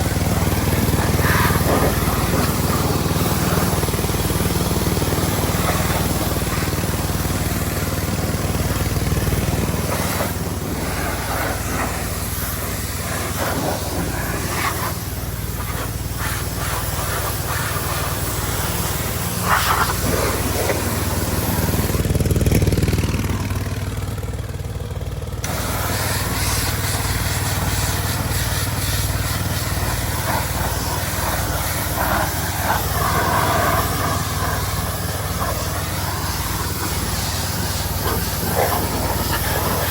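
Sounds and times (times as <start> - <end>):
lawn mower engine idling: 0.0 - 39.9
hissy noise: 25.4 - 39.9.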